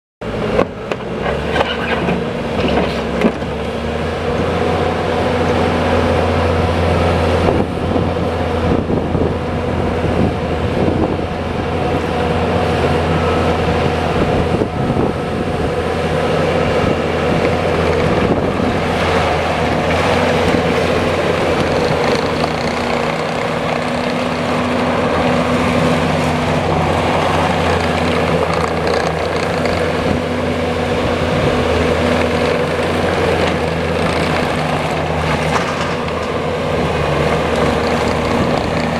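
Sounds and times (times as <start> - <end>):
diesel engine running: 0.2 - 38.9.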